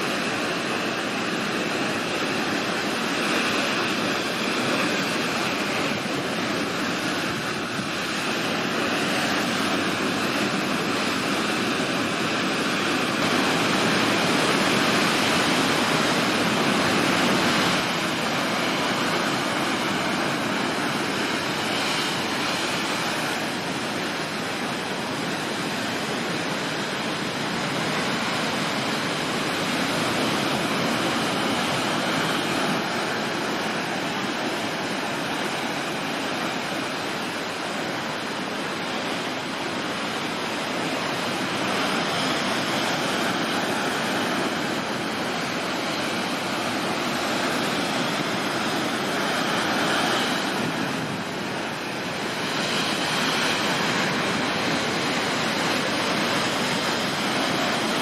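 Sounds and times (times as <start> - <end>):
heavy waves breaking: 0.0 - 58.0.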